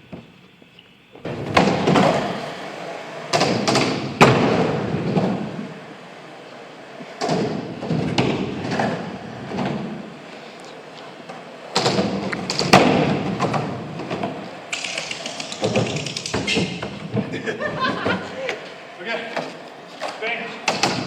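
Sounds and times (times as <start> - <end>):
skateboards rolling: 0.0 - 21.0
skateboard clacks: 11.3 - 18.6.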